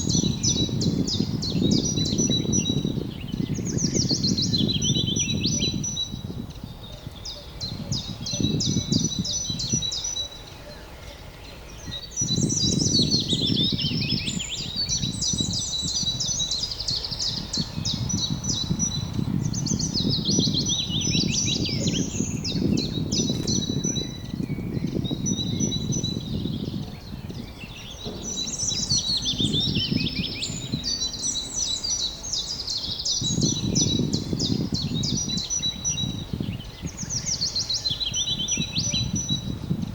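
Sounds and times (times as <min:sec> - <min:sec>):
songbirds chirping: 0:00.0 - 0:39.9
low rumble: 0:28.0 - 0:34.3.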